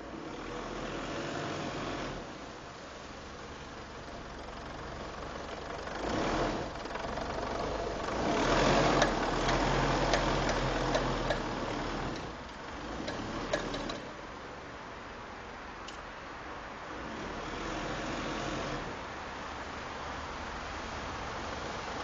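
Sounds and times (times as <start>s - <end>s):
pickup engine revving: 3.2s - 14.2s
drivetrain knocking: 3.9s - 14.2s.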